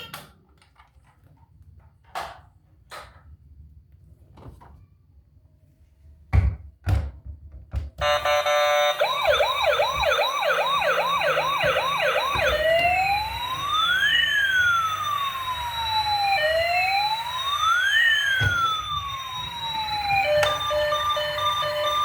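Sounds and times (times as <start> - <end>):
toy electronic siren: 8.0 - 22.0.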